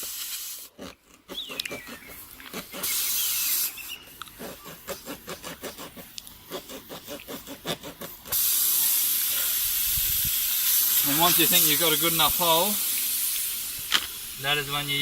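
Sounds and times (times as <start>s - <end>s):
air hissing from tyre: 0.0s - 0.7s, 2.8s - 4.9s, 8.2s - 15.0s
rasp tool strokes in tyre: 0.0s - 9.6s.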